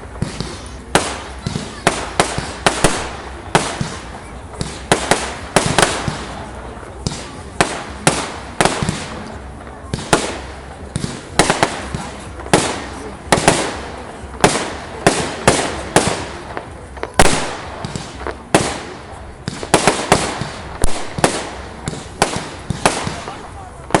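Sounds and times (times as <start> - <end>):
fireworks bangs with crackle: 0.0 - 24.0.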